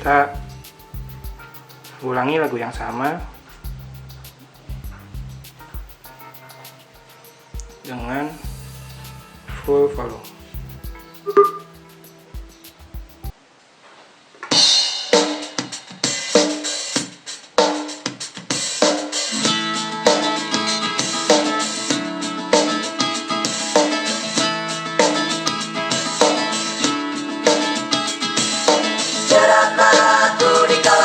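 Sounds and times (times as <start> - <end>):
bass and chords: 0.0 - 13.3
drum intro: 0.0 - 13.3
song through speaker: 7.6 - 13.3, 29.2 - 31.0.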